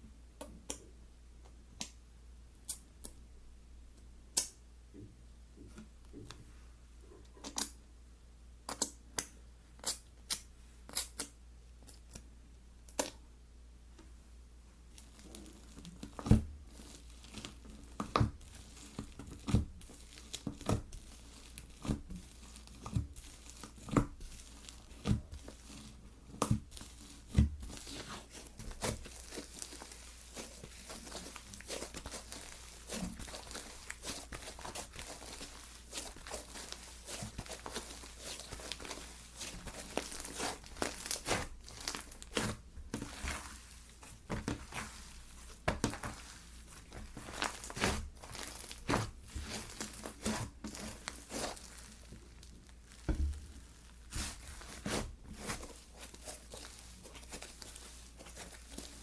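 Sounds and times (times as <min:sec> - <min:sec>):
slime popping and crackling: 0:14.9 - 0:59.0.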